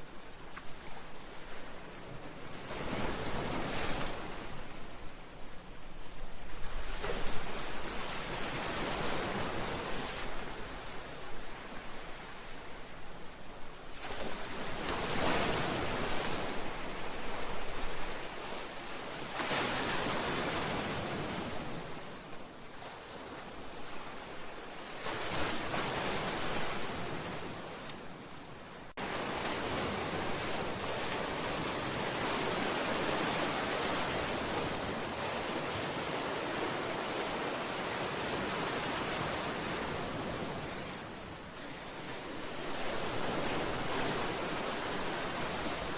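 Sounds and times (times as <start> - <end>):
sea waves breaking against a seawall: 13.9 - 45.9.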